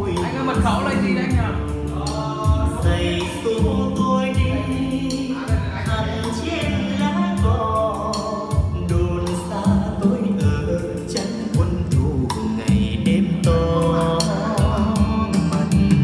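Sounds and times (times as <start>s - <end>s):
song with singing and drums: 0.0s - 16.0s.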